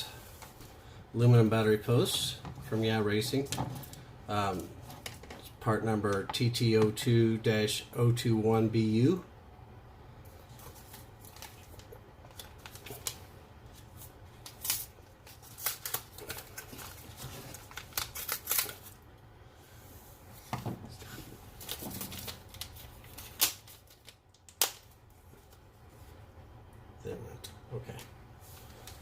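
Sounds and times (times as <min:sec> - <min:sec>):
plastic bag crinkling: 0:13.9 - 0:19.0.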